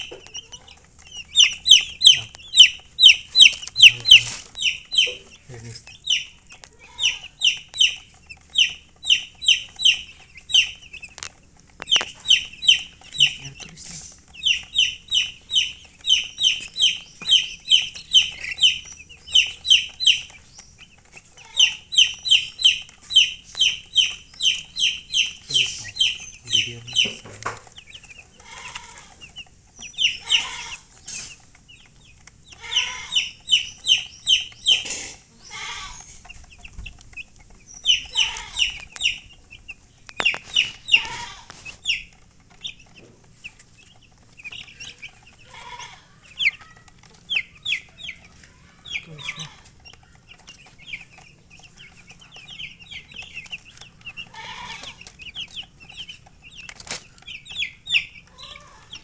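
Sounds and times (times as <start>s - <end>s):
baby chicks peeping: 0.0s - 59.0s
hen clucking: 0.0s - 59.0s.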